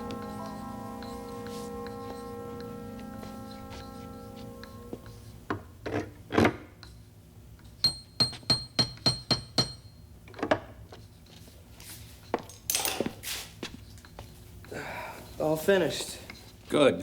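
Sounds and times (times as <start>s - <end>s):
sharp ringing metallic taps: 7.8s - 9.9s.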